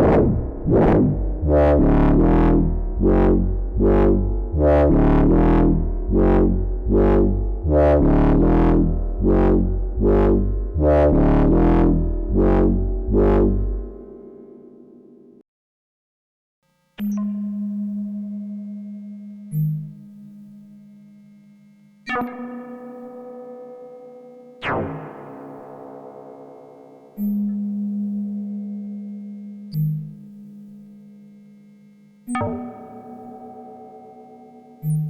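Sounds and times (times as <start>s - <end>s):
synthesizer plucky sequenced notes: 0.0s - 14.7s
deep synth bass: 0.0s - 14.9s.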